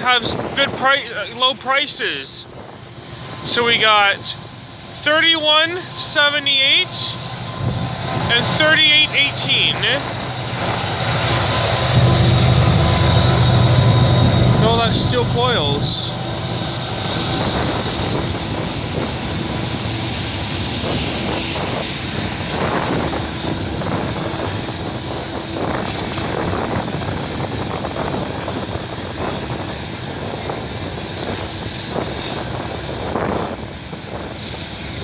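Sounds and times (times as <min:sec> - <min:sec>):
thin high whine: 0:00.0 - 0:29.3
train wheels rumbling on rail: 0:00.0 - 0:35.0
rail clacks: 0:02.5 - 0:29.5.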